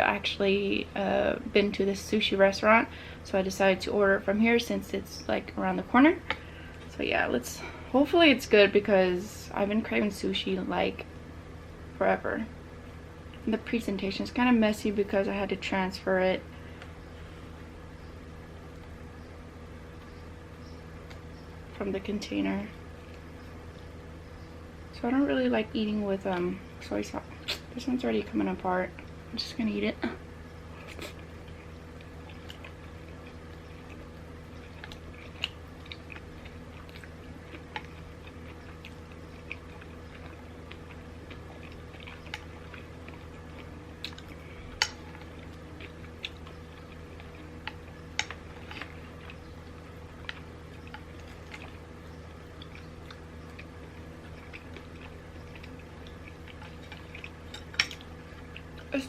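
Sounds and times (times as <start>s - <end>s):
steady low hum: 0.0s - 59.0s
chewing with wet mouth clicks: 30.8s - 59.0s.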